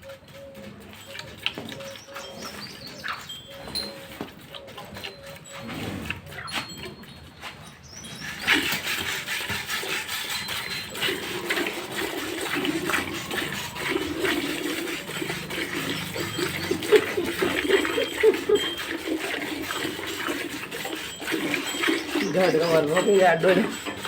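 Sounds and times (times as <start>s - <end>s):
milk squirting into metal pail: 8.3s - 24.0s.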